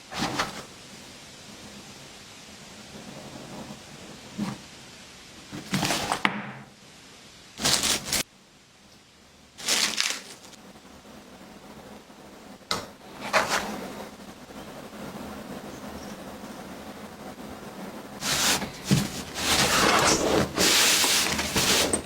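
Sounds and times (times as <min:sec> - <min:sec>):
packaging rustles and scrapes: 0:00.1 - 0:00.7, 0:05.5 - 0:06.2, 0:07.6 - 0:08.2, 0:09.6 - 0:10.6, 0:13.2 - 0:14.0, 0:18.2 - 0:22.0.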